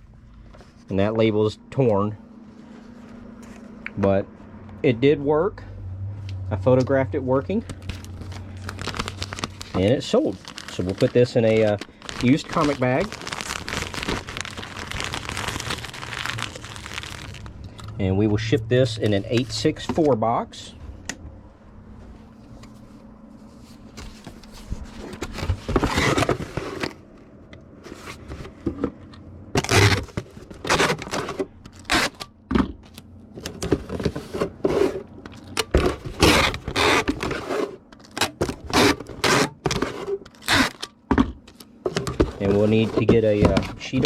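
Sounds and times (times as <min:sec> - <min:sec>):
cardboard scraping and rustling: 0:07.8 - 0:17.5, 0:22.0 - 0:27.0, 0:27.8 - 0:29.0, 0:29.6 - 0:32.2, 0:33.4 - 0:40.8, 0:41.9 - 0:44.0.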